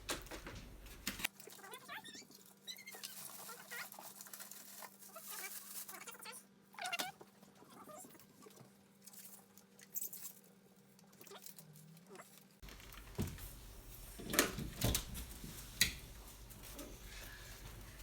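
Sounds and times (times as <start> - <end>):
scuffling and rustling: 2.8 - 6.2, 12.6 - 18.0.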